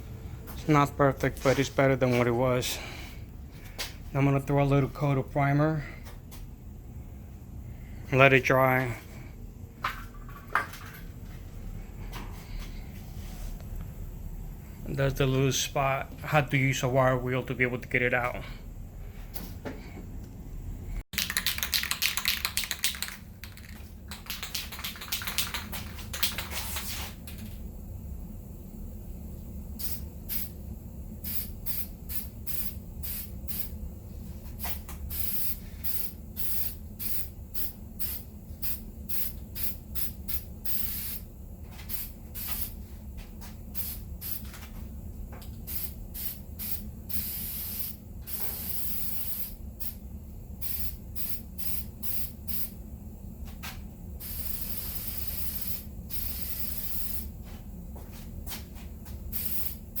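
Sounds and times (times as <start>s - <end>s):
steady low hum: 0.0s - 60.0s
spray can hissing bursts: 21.2s - 27.3s, 29.8s - 30.6s, 31.2s - 33.8s, 34.5s - 42.8s, 43.7s - 44.6s, 45.6s - 50.0s, 50.6s - 52.8s, 54.2s - 57.4s, 59.3s - 60.0s.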